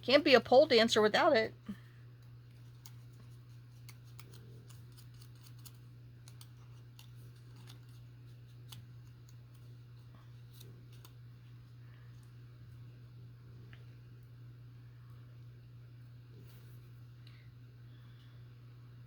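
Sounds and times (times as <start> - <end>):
steady low hum: 0.0 - 19.0
scissors cutting paper: 2.6 - 11.2.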